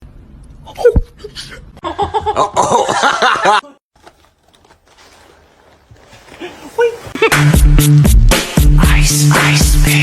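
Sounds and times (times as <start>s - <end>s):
person laughing hard: 0.7s - 3.8s, 7.0s - 7.7s.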